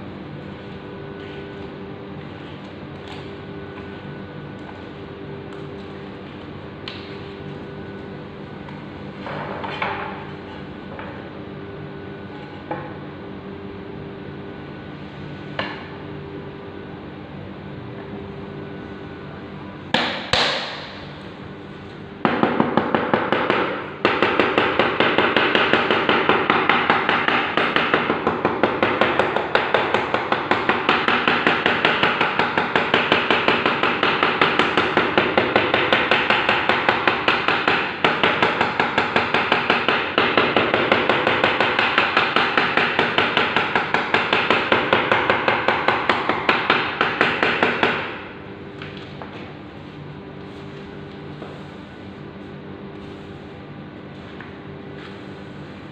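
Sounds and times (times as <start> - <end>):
hand hammering: 19.9 - 21.0, 22.2 - 48.2.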